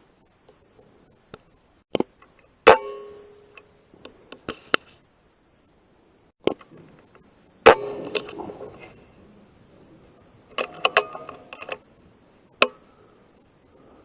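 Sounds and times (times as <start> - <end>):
air rifle shots: 7.6 - 8.9
mechanical clicks: 10.5 - 11.8.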